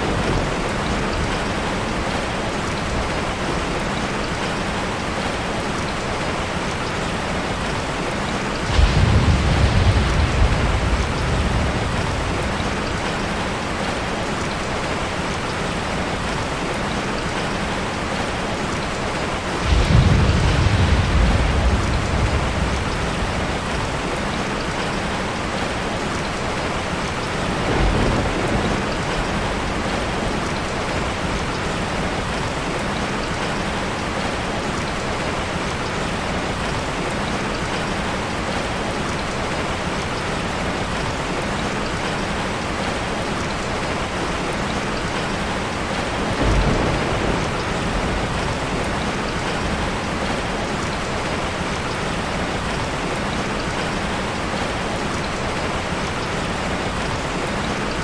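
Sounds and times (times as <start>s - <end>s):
thunder rumbles: 0.0s - 4.1s, 7.5s - 16.6s, 18.0s - 34.5s, 44.0s - 57.9s
steady rain: 0.0s - 58.0s.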